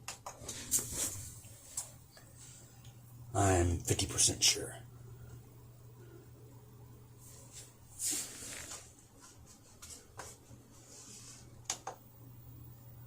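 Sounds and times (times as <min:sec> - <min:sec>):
steady low hum: 0:00.0 - 0:13.0
television hissing crackle: 0:07.2 - 0:08.9.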